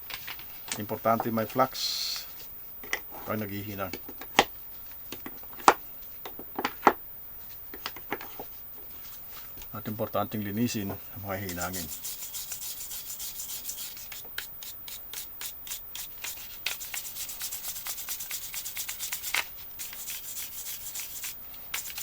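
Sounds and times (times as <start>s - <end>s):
scrubbing strokes on metal: 10.6s - 22.0s.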